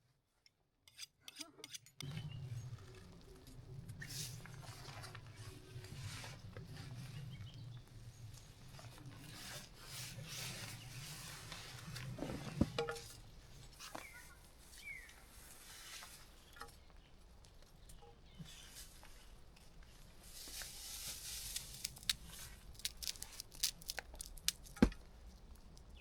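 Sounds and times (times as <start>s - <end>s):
low steady hum: 2.0s - 13.8s
rustling and scraping: 2.0s - 26.0s.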